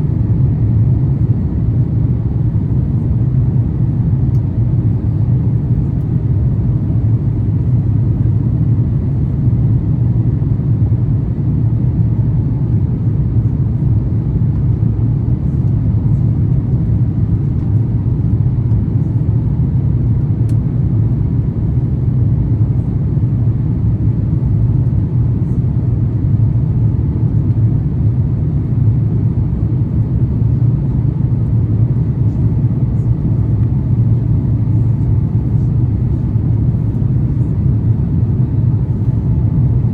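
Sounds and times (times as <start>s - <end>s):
airliner cabin engine rumble: 0.0s - 39.9s.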